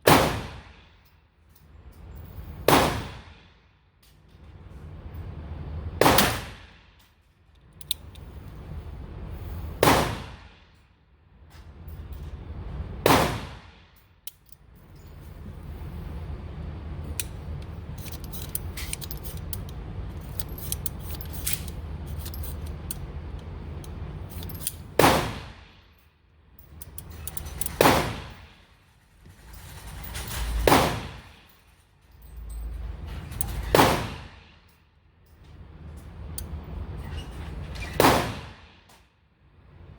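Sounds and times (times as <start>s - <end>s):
loud gunshots indoors: 0.0s - 0.9s, 2.7s - 3.6s, 6.0s - 6.8s, 9.8s - 10.5s, 13.0s - 13.8s, 25.0s - 25.7s, 30.6s - 31.2s, 38.0s - 38.8s
low hum: 14.4s - 25.0s.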